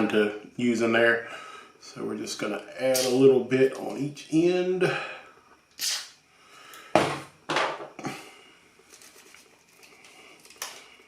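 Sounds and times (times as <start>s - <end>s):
aerosol spray hissing: 5.8s - 6.2s.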